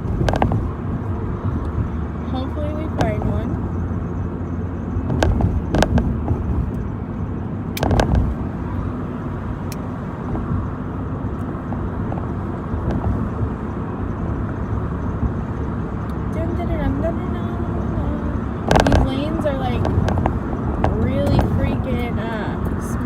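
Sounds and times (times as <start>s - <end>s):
road and engine rumble in car: 0.0s - 23.0s
sharp knocks or clicks: 0.1s - 0.6s, 5.0s - 6.8s, 7.8s - 8.4s, 18.7s - 19.2s.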